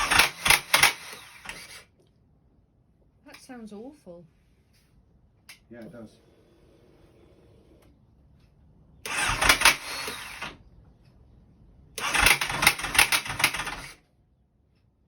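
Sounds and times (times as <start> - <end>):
engine starter cranking: 0.0 - 1.9, 9.0 - 10.6, 12.0 - 14.0.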